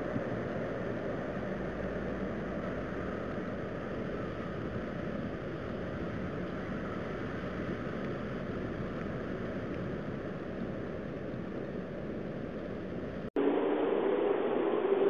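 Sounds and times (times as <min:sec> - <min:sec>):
steady low rumble: 0:00.0 - 0:15.0.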